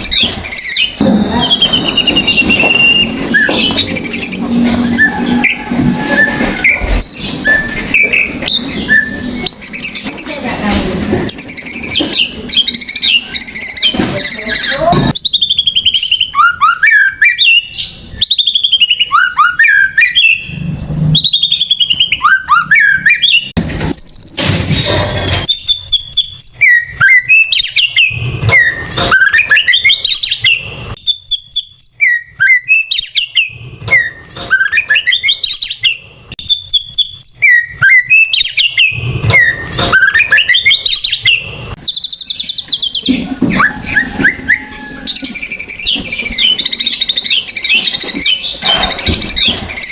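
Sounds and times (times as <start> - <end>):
bird singing whistled song: 0.0 - 10.4, 11.3 - 24.4, 25.4 - 49.9.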